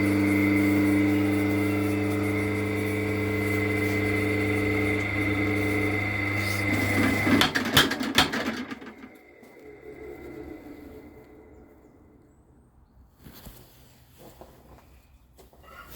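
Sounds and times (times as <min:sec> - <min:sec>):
power hammer motor humming: 0:00.0 - 0:12.5.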